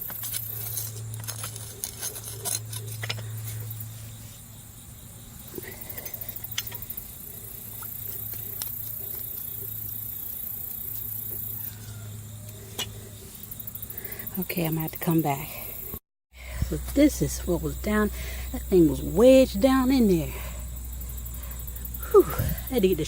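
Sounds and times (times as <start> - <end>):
shovel digging soil and wood chips: 0.0 - 4.6, 7.8 - 15.4.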